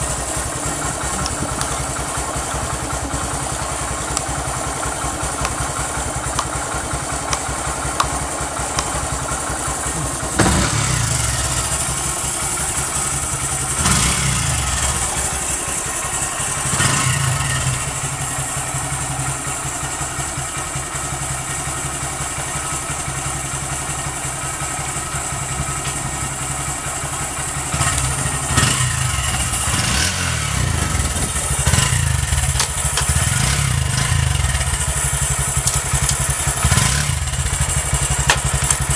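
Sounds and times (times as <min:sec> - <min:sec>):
motorcycle throttle blips: 0:00.0 - 0:12.8, 0:27.7 - 0:38.9
motorcycle engine idling: 0:00.0 - 0:38.9.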